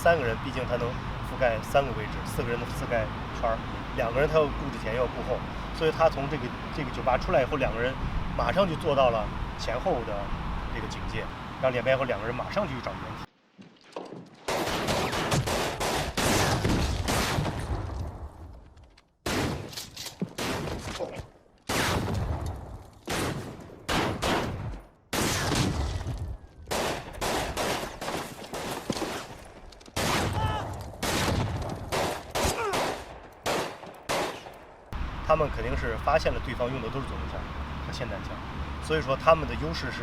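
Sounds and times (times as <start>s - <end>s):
pistol and shotgun fire: 14.5s - 17.8s, 19.2s - 19.8s, 20.4s - 20.9s, 21.7s - 22.4s, 23.1s - 26.0s, 26.7s - 29.3s, 30.0s - 30.4s, 31.0s - 34.6s.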